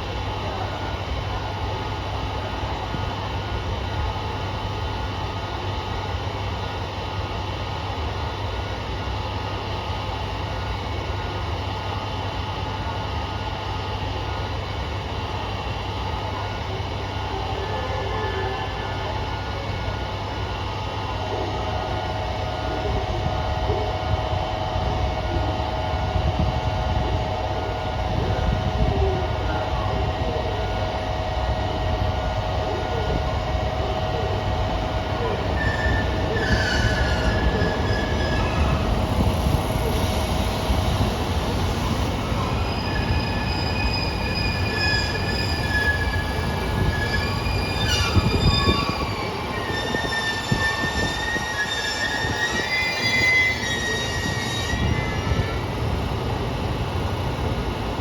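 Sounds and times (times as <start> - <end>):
diesel railcar low rumble: 0.0 - 58.0
whining and squealing tones: 35.2 - 40.1, 41.8 - 55.7.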